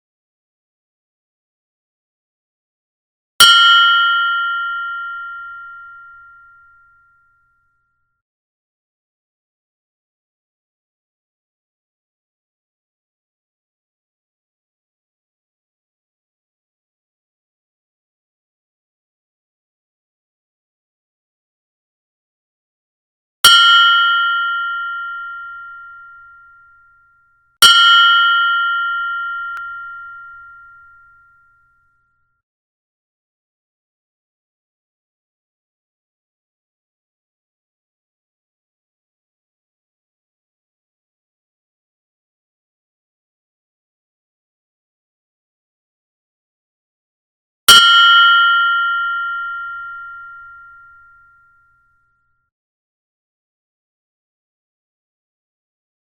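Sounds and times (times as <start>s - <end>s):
meditation bell ringing: 3.4s - 7.9s, 23.5s - 32.2s, 47.7s - 52.2s.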